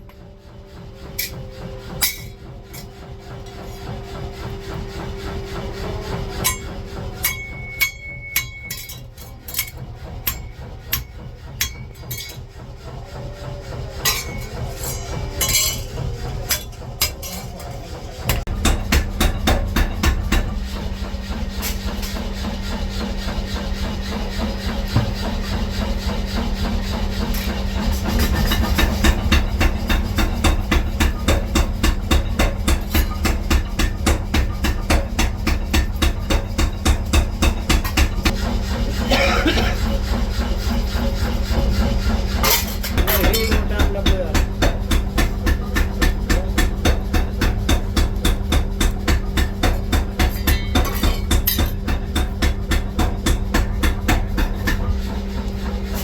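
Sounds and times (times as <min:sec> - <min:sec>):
machine rattling over steady hum: 0:00.0 - 0:56.0
hammer strikes on steel: 0:01.1 - 0:03.8, 0:05.6 - 0:12.5, 0:14.0 - 0:20.6, 0:27.2 - 0:38.4, 0:42.4 - 0:55.2.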